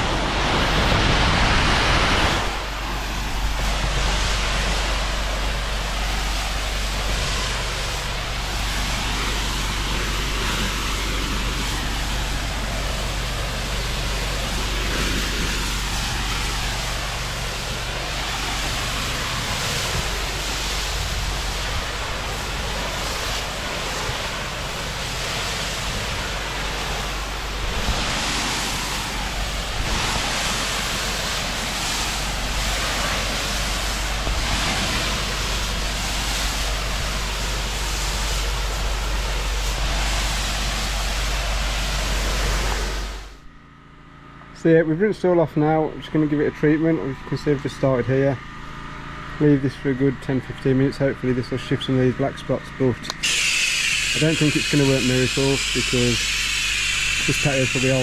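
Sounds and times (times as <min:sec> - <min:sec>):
pressure washer water spray hissing: 0:00.0 - 0:43.4, 0:47.4 - 0:58.0
low hum: 0:00.0 - 0:58.0.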